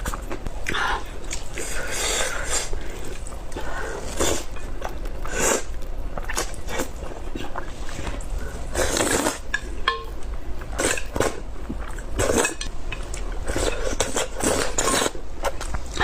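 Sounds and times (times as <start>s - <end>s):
noodle slurping: 5.2s - 9.5s.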